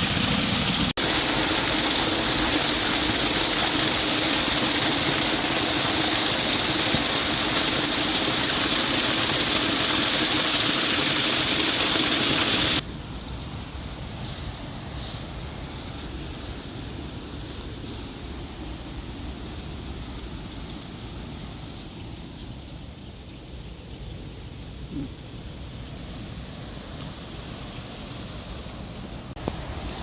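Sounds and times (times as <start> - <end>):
waterfall rushing: 0.0 - 12.8
wind: 0.0 - 30.0.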